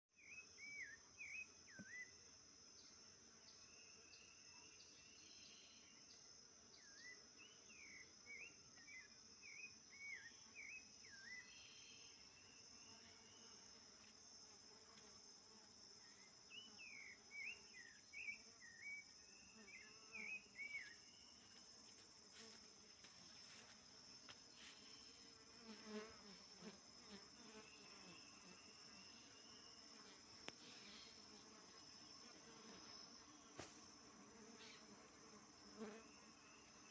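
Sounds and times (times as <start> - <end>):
high insect trill: 0.2 - 36.9.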